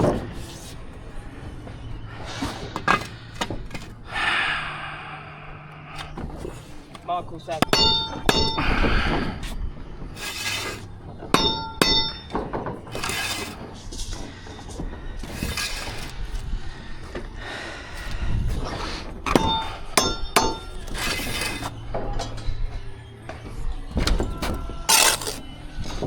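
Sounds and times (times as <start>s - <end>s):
trowel scraping mortar: 6.0s - 12.3s, 12.9s - 17.0s, 18.5s - 21.8s, 24.4s - 26.0s
trowel metallic clinks: 7.6s - 8.8s, 11.4s - 12.4s.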